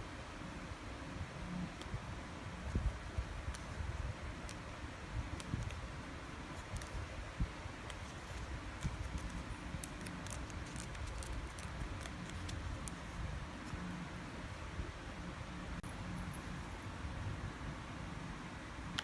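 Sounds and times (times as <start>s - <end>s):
low background rumble: 0.0s - 19.0s
small hard parts clicking: 7.9s - 13.2s.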